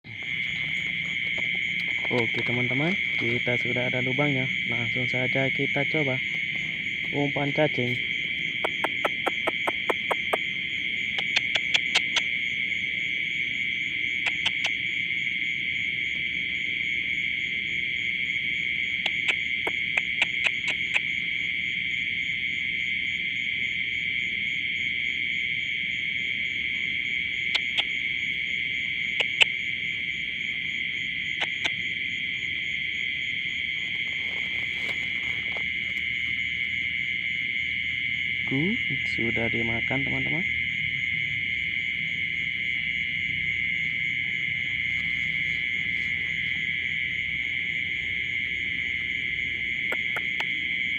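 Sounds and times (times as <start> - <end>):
insects buzzing: 0.0 - 50.9
sharp clicks: 8.6 - 10.4, 11.2 - 12.3, 14.2 - 14.8, 19.0 - 21.1, 27.5 - 27.9, 29.1 - 29.6, 31.4 - 31.8.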